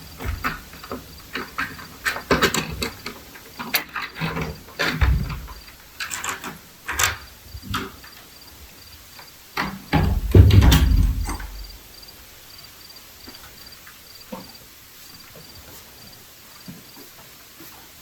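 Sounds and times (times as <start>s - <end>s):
cricket chirping: 0.0s - 17.1s
sharp knocks and bumps: 0.1s - 7.2s, 9.6s - 11.8s.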